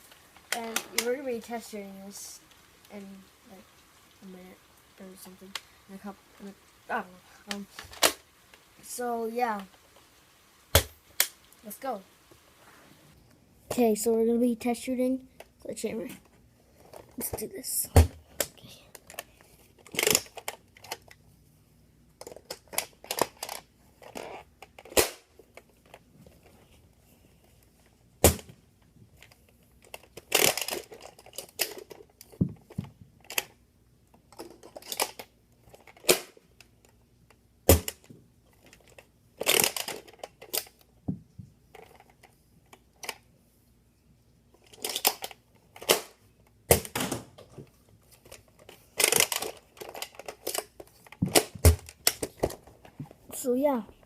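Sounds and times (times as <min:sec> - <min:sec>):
clicking and clattering of blaster: 0:18.4 - 0:21.1, 0:29.2 - 0:32.1, 0:34.3 - 0:40.8, 0:44.6 - 0:47.4, 0:48.2 - 0:52.7.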